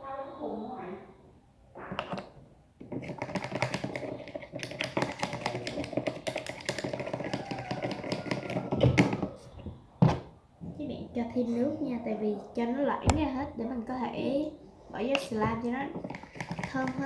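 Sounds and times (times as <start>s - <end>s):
utensil tapping against container: 2.8s - 9.4s, 15.1s - 17.0s.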